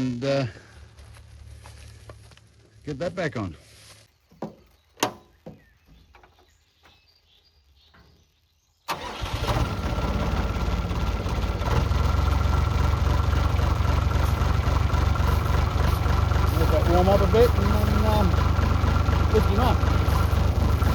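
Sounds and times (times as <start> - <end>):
diesel engine starting and idling: 8.9 - 20.9.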